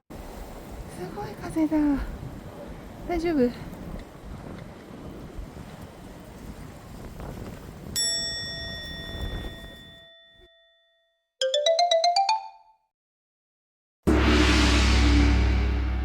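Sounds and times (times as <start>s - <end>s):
wind noise on microphone: 0.2s - 10.0s
bell-like chime: 8.0s - 12.6s.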